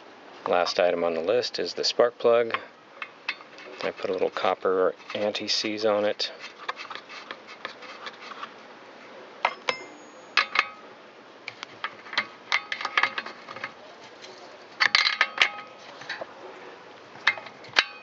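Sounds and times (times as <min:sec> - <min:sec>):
metal tools clinking together: 0:09.5 - 0:10.8.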